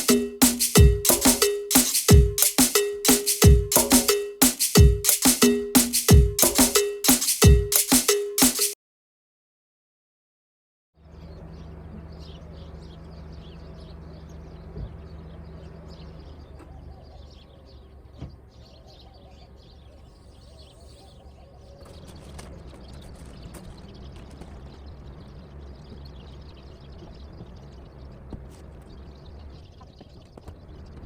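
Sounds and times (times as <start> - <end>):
small birds chirping: 11.1 - 31.0.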